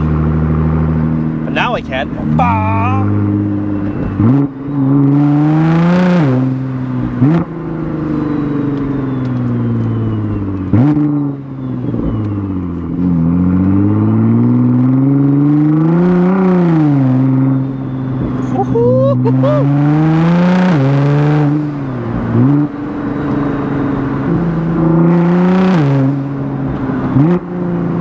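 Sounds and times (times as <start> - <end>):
car engine accelerating hard: 0.0 - 18.6, 19.2 - 28.0.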